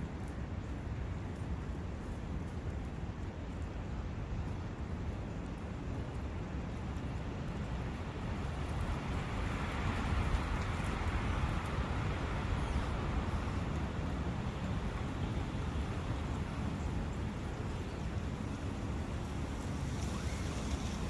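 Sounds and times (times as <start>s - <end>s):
forest brook rushing: 3.4s - 21.0s.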